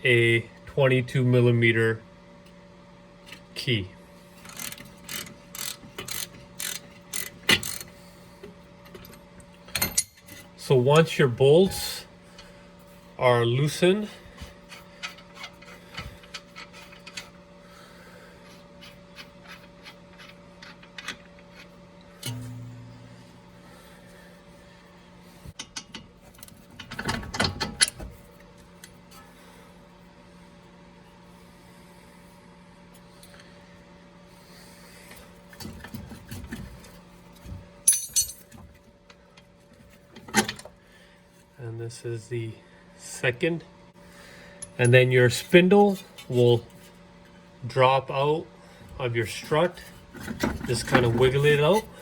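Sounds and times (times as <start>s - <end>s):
faint steady hum: 0.0s - 52.0s
hand tools clicking and rattling: 4.5s - 7.9s.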